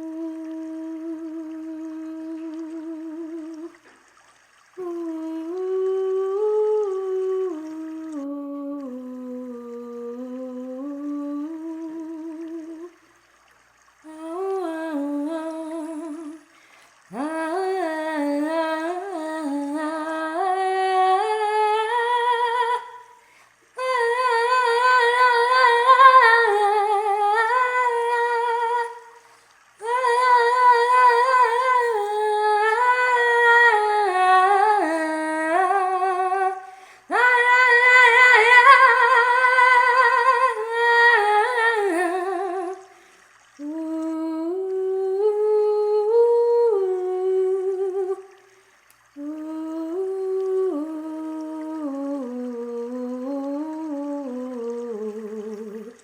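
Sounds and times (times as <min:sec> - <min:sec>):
woman humming a chant: 0:00.0 - 0:03.8, 0:04.8 - 0:13.0, 0:14.1 - 0:16.5, 0:17.1 - 0:23.2, 0:23.8 - 0:29.1, 0:29.8 - 0:42.9, 0:43.6 - 0:48.3, 0:49.2 - 0:56.0.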